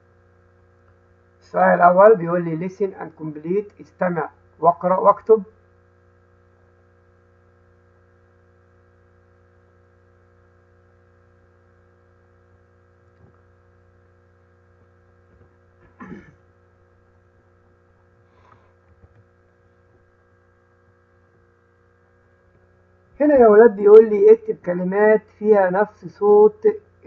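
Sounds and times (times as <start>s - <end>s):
electrical mains hum: 0.0s - 27.0s.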